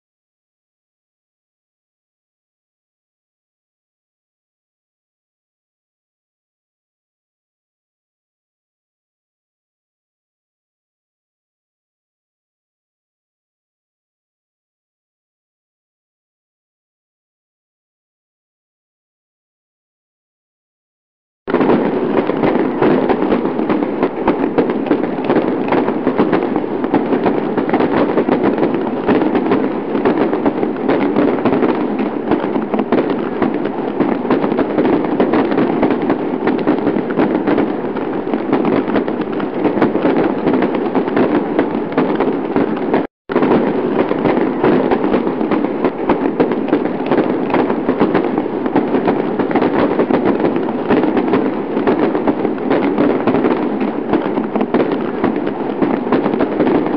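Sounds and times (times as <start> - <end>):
fireworks crackling and popping: 21.5 - 56.9.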